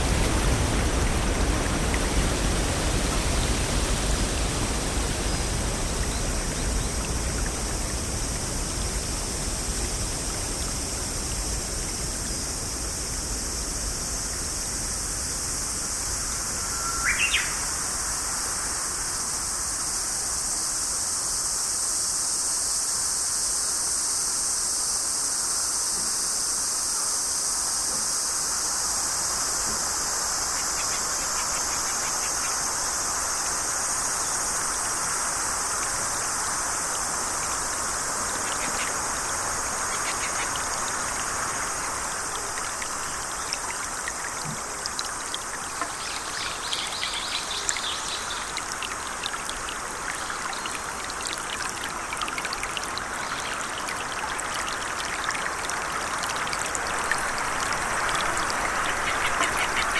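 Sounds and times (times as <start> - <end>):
steady high-pitched hiss: 0.0 - 59.9.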